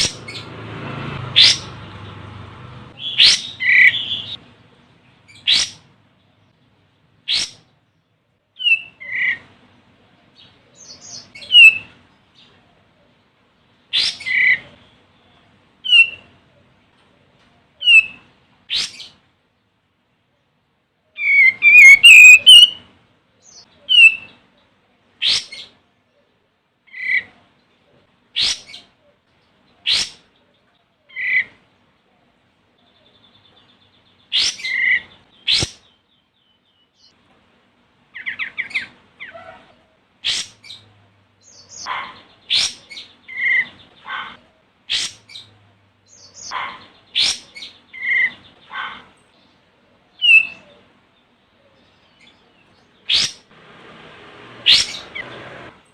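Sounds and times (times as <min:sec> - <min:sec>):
bird chattering and calling: 0:01.3 - 0:01.9, 0:02.9 - 0:04.4, 0:05.3 - 0:05.9, 0:07.3 - 0:07.8, 0:10.3 - 0:12.6, 0:13.9 - 0:16.4, 0:21.2 - 0:22.8, 0:23.4 - 0:24.5, 0:25.2 - 0:25.8, 0:28.4 - 0:29.0, 0:29.7 - 0:30.4, 0:31.1 - 0:31.6, 0:32.9 - 0:36.1, 0:38.1 - 0:45.5, 0:46.1 - 0:49.4, 0:50.0 - 0:50.9, 0:51.6 - 0:53.5, 0:54.6 - 0:55.8.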